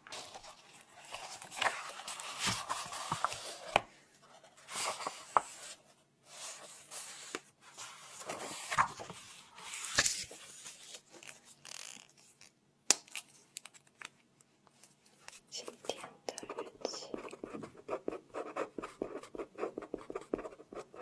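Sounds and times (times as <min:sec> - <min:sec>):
paper rustling: 0:00.1 - 0:03.8, 0:04.6 - 0:05.8, 0:06.4 - 0:12.0.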